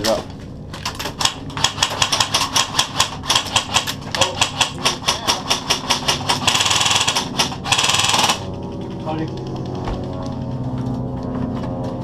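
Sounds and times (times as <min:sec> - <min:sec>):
airsoft gun firing: 0:01.1 - 0:08.4.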